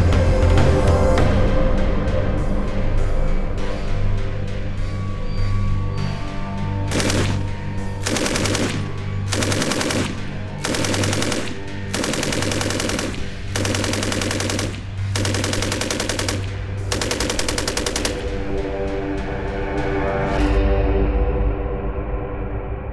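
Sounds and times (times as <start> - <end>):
background music: 0.0 - 22.9
machine gun firing bursts: 6.9 - 18.5.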